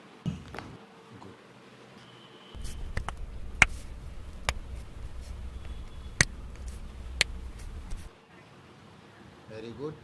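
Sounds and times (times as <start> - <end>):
steady low rumble: 2.6 - 8.1.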